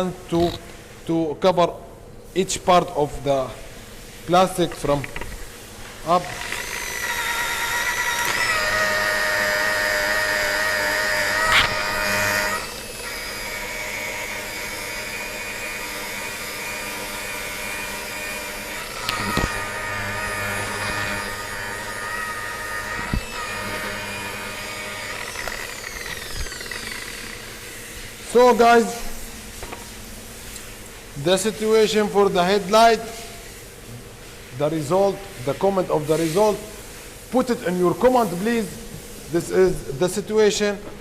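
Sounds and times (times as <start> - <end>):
polishing machine motor whine: 6.1 - 28.7.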